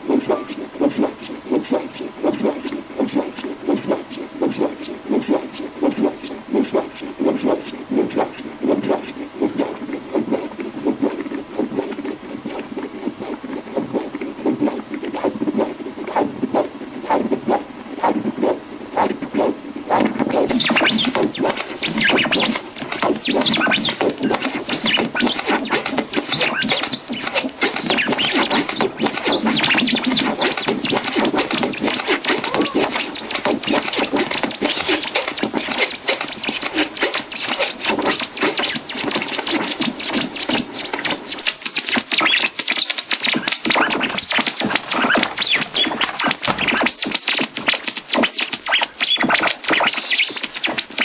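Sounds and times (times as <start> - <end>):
electronic music: 20.5 - 51.0.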